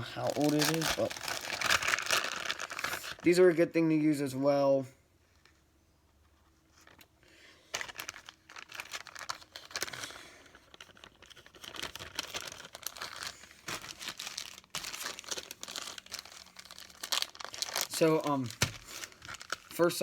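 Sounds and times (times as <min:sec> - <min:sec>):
plastic packet crinkling: 0:00.0 - 0:03.4, 0:06.8 - 0:20.0.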